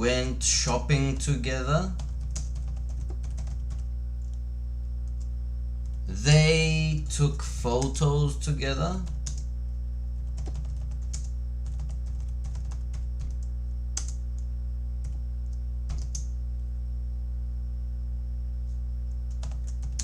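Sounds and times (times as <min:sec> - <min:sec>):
low electrical hum: 0:00.0 - 0:20.0
computer keyboard clicks: 0:10.3 - 0:14.5, 0:15.5 - 0:16.3, 0:19.3 - 0:20.0.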